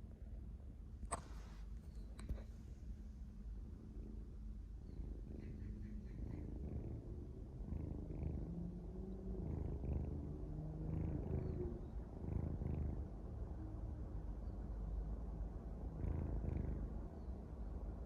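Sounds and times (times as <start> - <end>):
kitten snoring: 3.9 - 13.6, 15.8 - 17.1.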